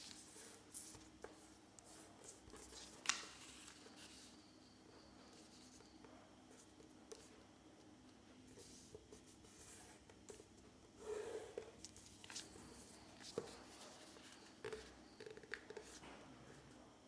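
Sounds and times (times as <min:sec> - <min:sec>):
paper rustling and crinkling: 0:11.8 - 0:14.5.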